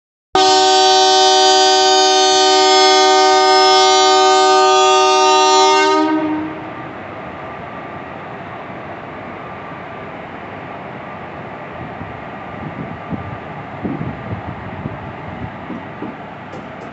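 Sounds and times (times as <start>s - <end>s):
locomotive horn blast: 0.4s - 6.8s.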